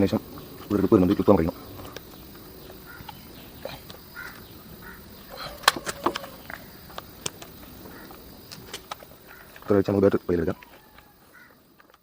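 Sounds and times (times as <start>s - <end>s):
faint bird calls: 0.0s - 12.0s.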